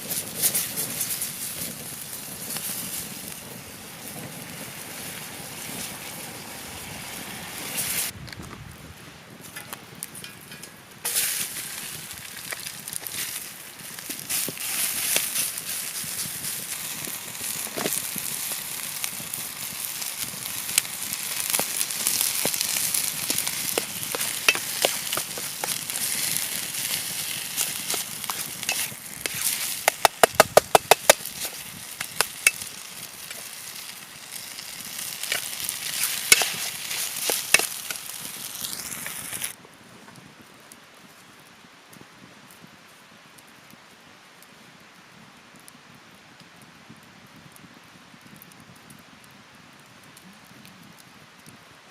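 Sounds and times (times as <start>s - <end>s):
food sizzling over campfire: 0.0s - 51.9s
crackling pops: 9.4s - 39.6s.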